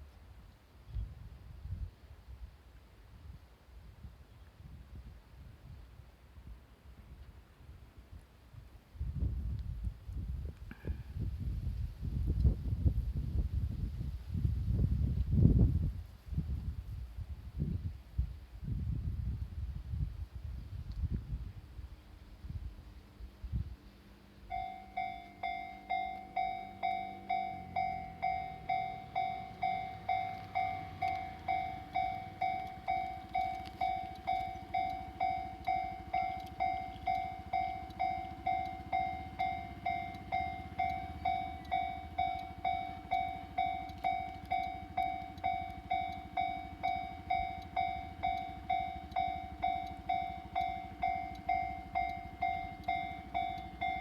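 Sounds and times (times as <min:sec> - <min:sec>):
low railcar rumble: 0:00.0 - 0:54.0
level crossing warning bell: 0:24.4 - 0:54.0.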